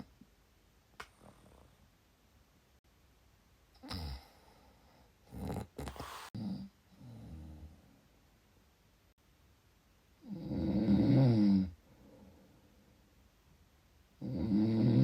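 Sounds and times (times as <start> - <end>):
quiet breaths: 3.7 - 8.8, 10.2 - 15.0
loud snore: 5.3 - 7.5, 10.2 - 11.8, 14.2 - 15.0.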